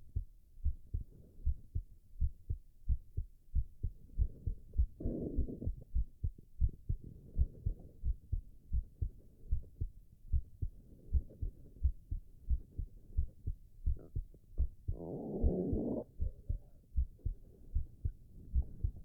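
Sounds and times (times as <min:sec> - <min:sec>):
heartbeat thumps: 0:00.0 - 0:19.0.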